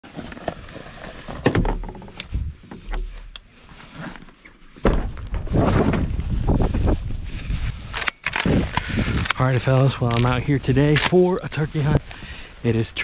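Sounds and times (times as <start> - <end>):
low thumps: 4.8 - 7.3.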